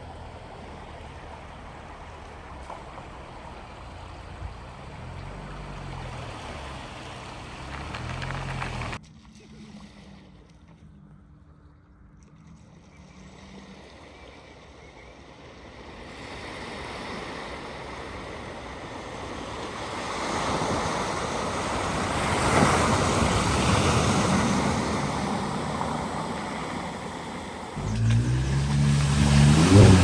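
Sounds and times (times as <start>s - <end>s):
floodwater rushing and splashing: 0.0s - 9.0s, 19.6s - 30.0s.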